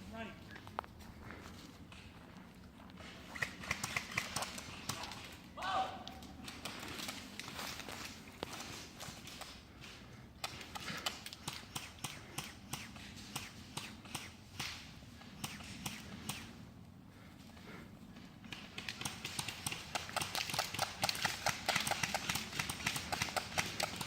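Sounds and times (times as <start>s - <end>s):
footsteps crunching over ground: 0.0s - 3.3s, 6.1s - 10.2s.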